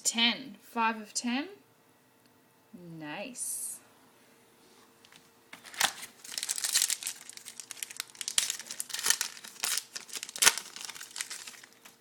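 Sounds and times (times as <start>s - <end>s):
wrapper crinkling and tearing: 5.6s - 12.0s.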